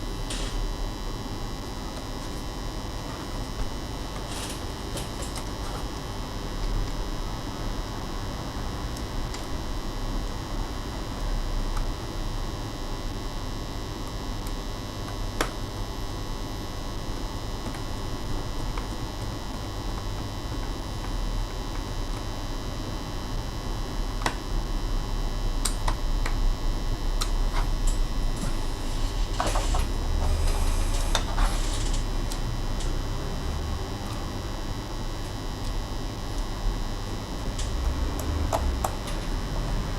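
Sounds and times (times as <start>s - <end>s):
electrical hum: 0.0s - 39.9s
laptop parts scraping and rattling: 4.1s - 5.9s, 28.3s - 32.1s.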